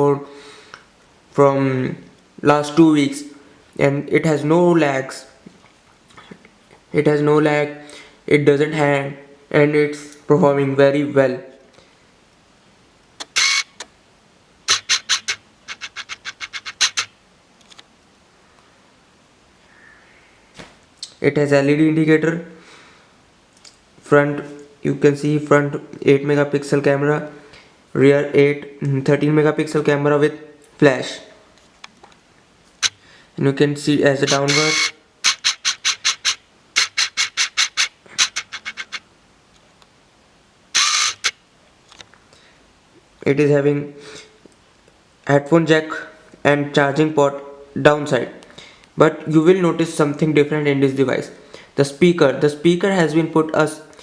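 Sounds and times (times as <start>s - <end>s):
rustle: 11.6s - 21.2s, 30.6s - 33.4s, 34.3s - 43.3s
loud rub: 14.7s - 17.1s, 34.2s - 39.0s
rhythmic scratching strokes: 14.7s - 17.1s, 34.2s - 39.0s.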